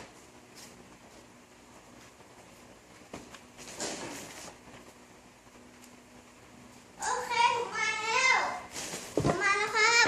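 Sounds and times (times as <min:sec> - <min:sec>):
steady low hiss: 0:00.0 - 0:10.0.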